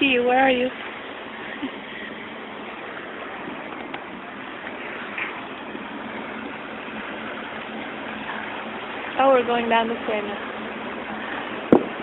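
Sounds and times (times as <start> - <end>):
boat rushing water noise: 0.0 - 12.0.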